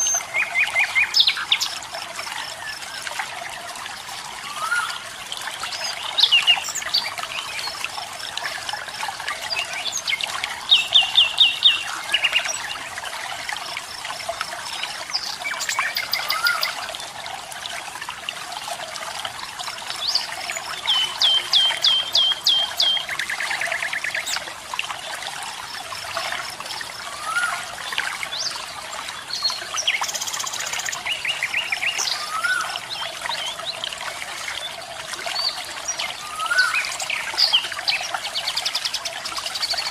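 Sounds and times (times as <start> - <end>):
birds calling: 0.0 - 0.5
flowing water: 0.0 - 39.9.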